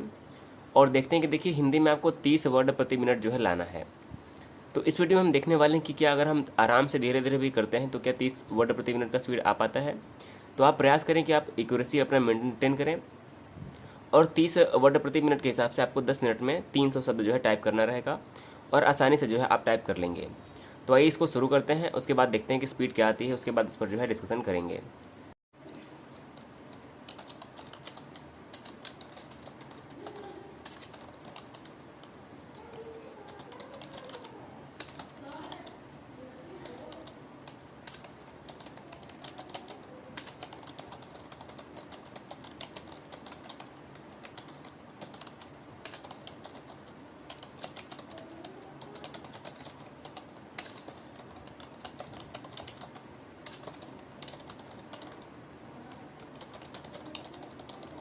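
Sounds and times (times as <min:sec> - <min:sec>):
keyboard typing: 0:26.2 - 0:35.8, 0:36.5 - 0:55.3, 0:55.9 - 0:58.0.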